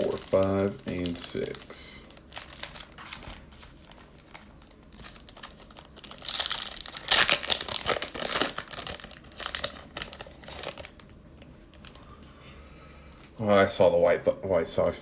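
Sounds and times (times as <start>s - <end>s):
foil wrapper crinkling and tearing: 0.0s - 11.1s, 11.7s - 12.0s.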